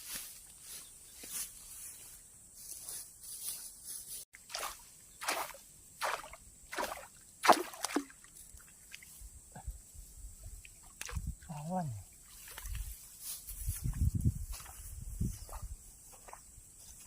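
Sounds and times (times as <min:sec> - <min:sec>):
footsteps squelching through mud: 0:02.8 - 0:09.1, 0:12.2 - 0:17.0.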